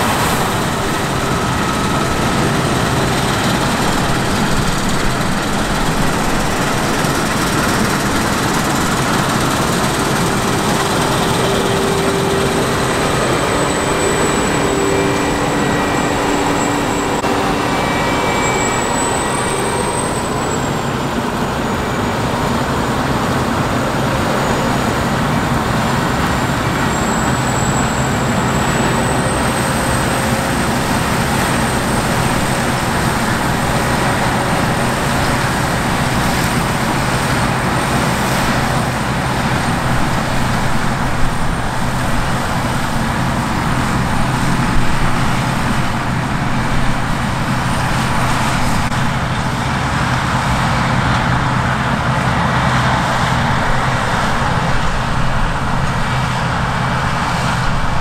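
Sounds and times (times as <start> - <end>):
faint high whine: 0.0 - 39.1
traffic noise: 0.0 - 58.0.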